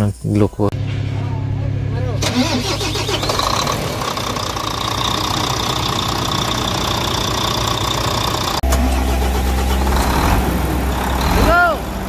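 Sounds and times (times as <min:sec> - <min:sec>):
diesel truck engine idling: 0:00.7 - 0:12.0.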